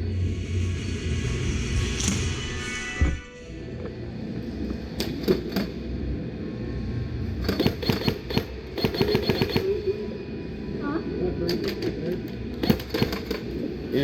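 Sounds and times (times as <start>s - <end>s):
rapid airsoft bursts: 7.5s - 9.8s.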